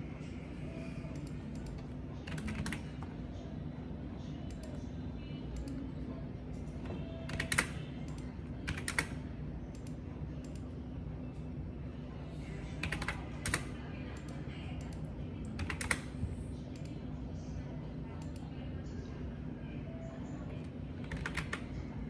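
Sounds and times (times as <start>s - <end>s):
steady low hum: 0.0s - 22.0s
typing on keyboard: 1.1s - 3.1s, 7.2s - 10.7s, 12.8s - 16.9s, 20.6s - 21.7s.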